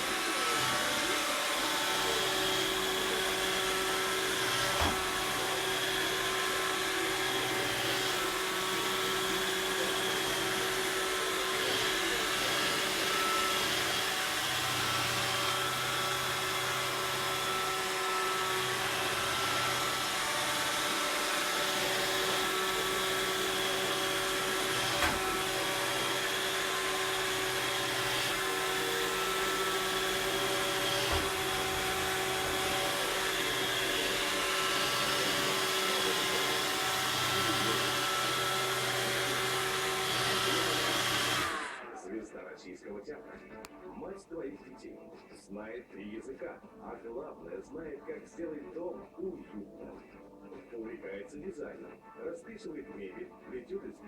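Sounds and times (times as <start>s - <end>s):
robot vacuum motor hum: 0.0s - 42.0s.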